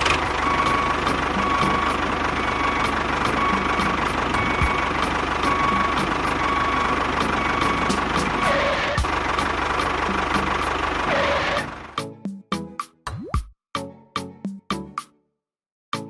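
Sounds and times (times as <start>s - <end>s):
engine running: 0.0s - 12.0s.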